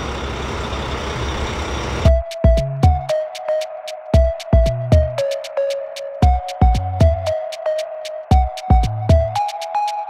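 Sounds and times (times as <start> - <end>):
truck engine: 0.0 - 2.1
electronic music with kick drum: 2.0 - 10.0.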